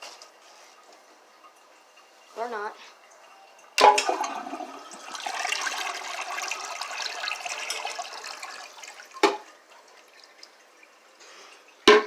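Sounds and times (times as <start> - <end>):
toilet flush clunk: 3.8 - 10.0
water rushing through toilet bowl: 3.8 - 10.5.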